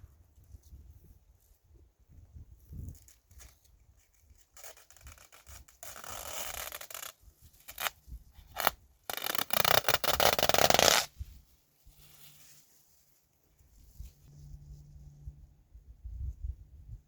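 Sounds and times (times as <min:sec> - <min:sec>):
dry scraping and rubbing: 0:08.5 - 0:11.2.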